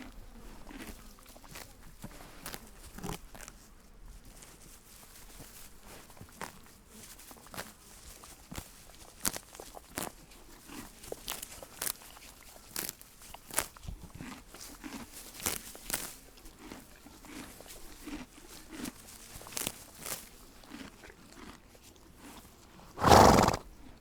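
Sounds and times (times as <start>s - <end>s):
horse chewing feed: 0.0s - 24.0s
horse snorting: 22.9s - 23.8s.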